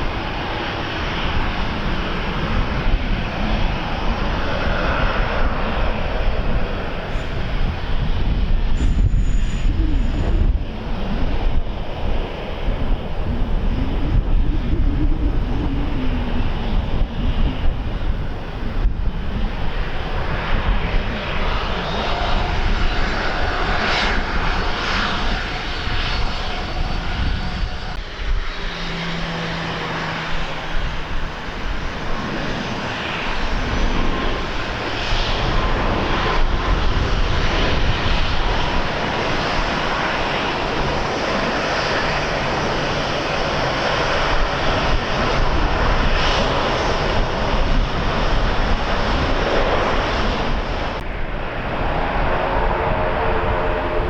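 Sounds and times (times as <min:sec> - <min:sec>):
airliner engines rushing: 0:00.0 - 0:54.0.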